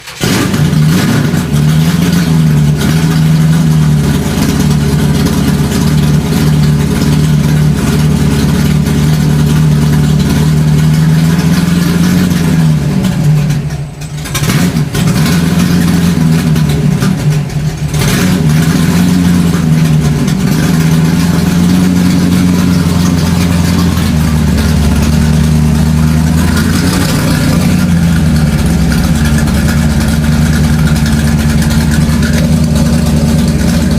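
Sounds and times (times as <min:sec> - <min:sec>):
motor running loudly: 0:21.4 - 0:33.9.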